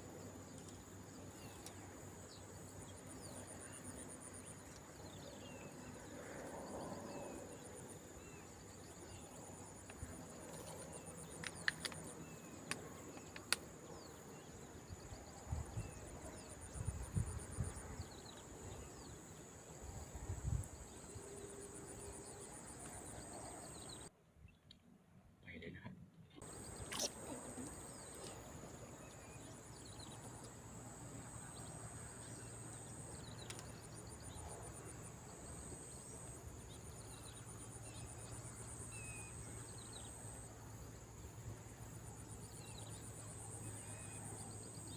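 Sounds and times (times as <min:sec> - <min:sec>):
faint outdoor hiss: 0:00.0 - 0:44.9
insects buzzing: 0:26.4 - 0:44.9.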